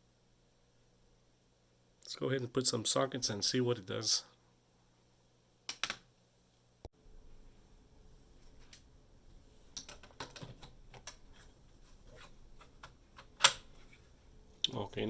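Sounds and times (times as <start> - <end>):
sockets clicking onto plastic clips: 12.2 - 13.7.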